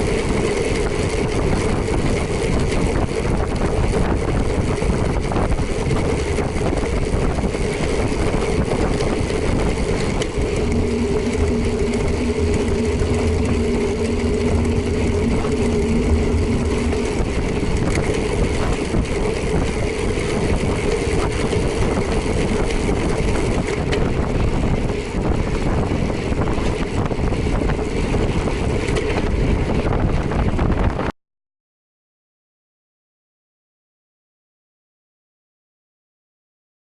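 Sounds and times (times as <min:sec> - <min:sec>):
wind on microphone: 0:00.0 - 0:31.1
second lower engine note: 0:10.0 - 0:19.6.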